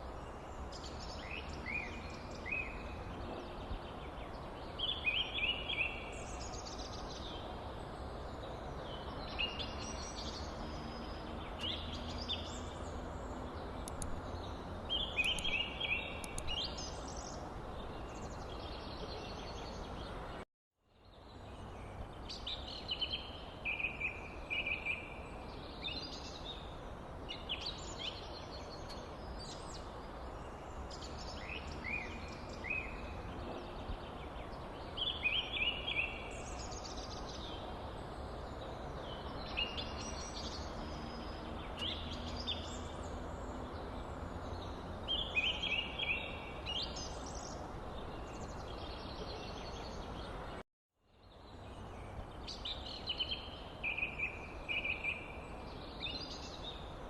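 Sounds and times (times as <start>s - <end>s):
birds chirping: 0.0s - 20.4s, 21.0s - 50.6s, 51.2s - 57.0s.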